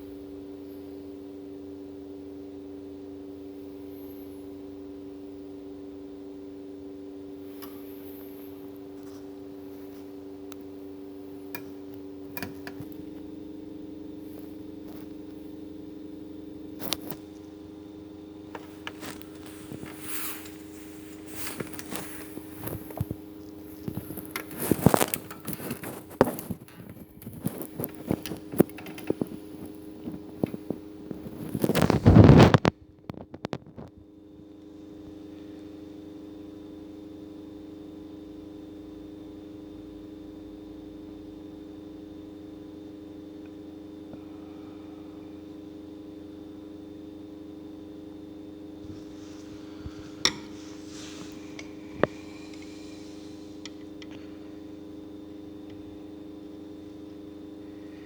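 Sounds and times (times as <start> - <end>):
electrical hum: 0.0 - 58.0
clicks taps and scrapes of tools: 24.2 - 29.3, 50.2 - 52.8.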